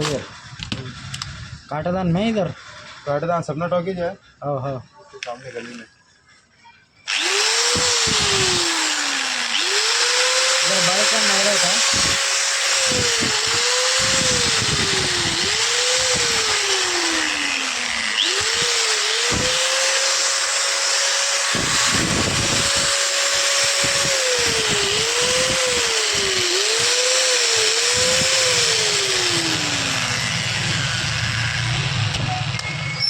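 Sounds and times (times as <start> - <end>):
angle grinder motor spinning: 7.1 - 33.0.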